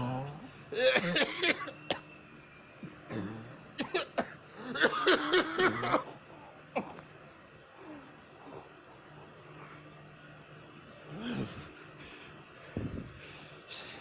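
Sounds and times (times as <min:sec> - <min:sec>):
person coughing hard: 0:00.8 - 0:02.0, 0:03.1 - 0:06.2.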